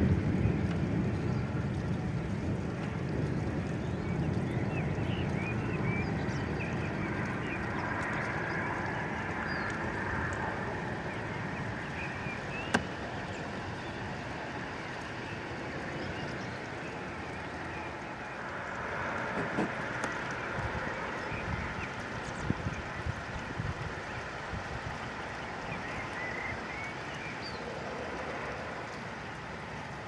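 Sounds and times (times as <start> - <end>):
wind rumbling on microphone: 0.0 - 30.0
small birds chirping: 10.7 - 20.2.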